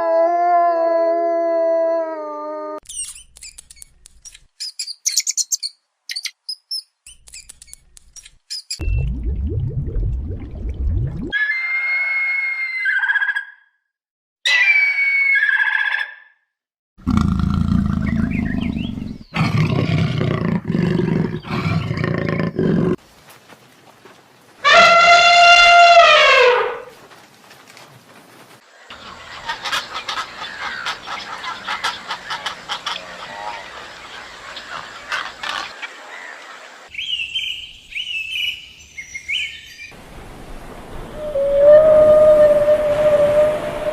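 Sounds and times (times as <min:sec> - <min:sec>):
lion roaring and growling: 0:17.0 - 0:23.0
outdoor background noise: 0:17.0 - 0:43.9
high pitched animal call: 0:24.7 - 0:26.8, 0:41.2 - 0:43.9
bird calling: 0:28.9 - 0:39.9, 0:41.1 - 0:43.9.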